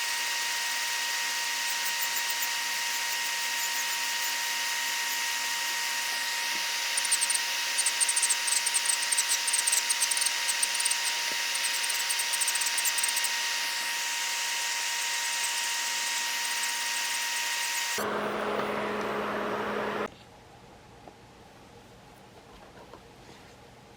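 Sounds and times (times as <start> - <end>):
drill bit grinding on nail: 0.0 - 18.0
electric nail drill whining: 0.0 - 19.2.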